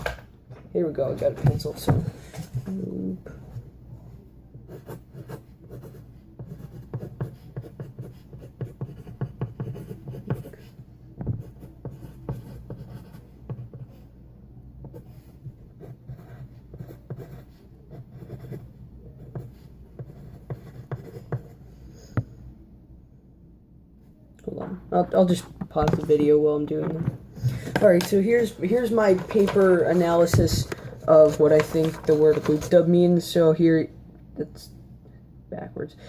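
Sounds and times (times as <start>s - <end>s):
pencil scratching on paper: 4.7s - 14.1s, 14.8s - 21.6s
pencil tapping: 4.8s - 13.9s.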